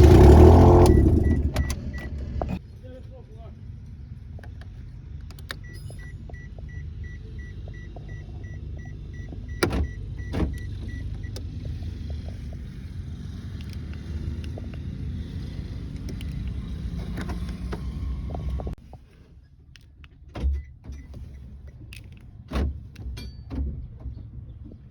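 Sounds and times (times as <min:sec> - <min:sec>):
car engine idling: 0:00.0 - 0:02.6, 0:06.6 - 0:18.8
warning chime beeping: 0:00.0 - 0:02.6.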